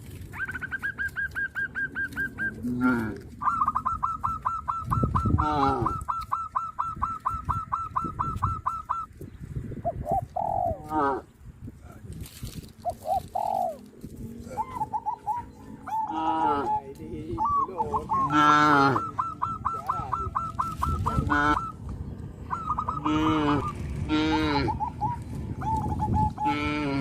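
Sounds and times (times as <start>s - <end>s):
bird calling rapid notes: 0.2s - 9.2s, 14.5s - 26.8s
cattle lowing: 1.9s - 4.4s, 12.9s - 16.9s, 17.6s - 21.8s, 22.4s - 27.0s.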